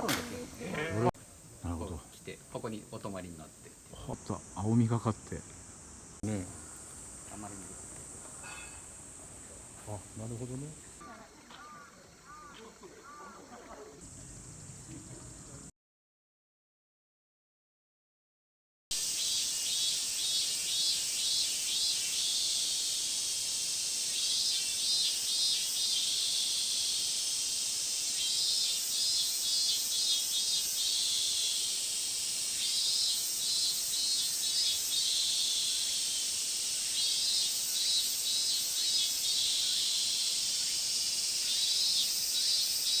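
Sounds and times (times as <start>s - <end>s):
insect pulsed trills: 0.0s - 15.7s, 19.0s - 43.0s
insects hissing: 0.0s - 15.7s, 18.9s - 43.0s.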